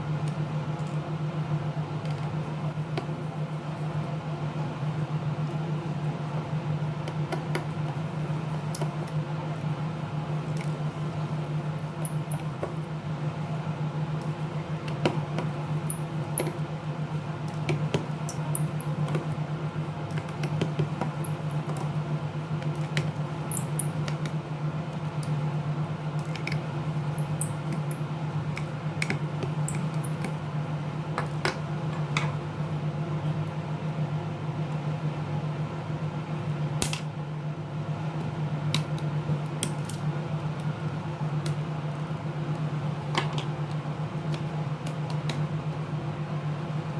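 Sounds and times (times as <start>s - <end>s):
low electrical hum: 0.0s - 46.9s
small tools clicking and tapping: 8.2s - 8.9s.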